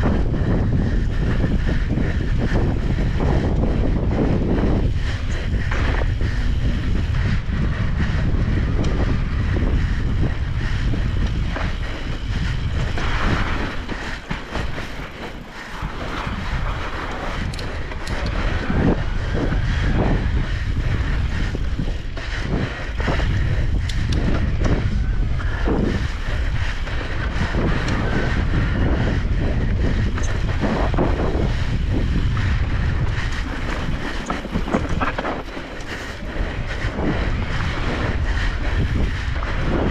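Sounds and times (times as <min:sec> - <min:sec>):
bike rattling over bumps: 0:00.0 - 0:39.9
wind buffeting microphone: 0:00.0 - 0:39.9.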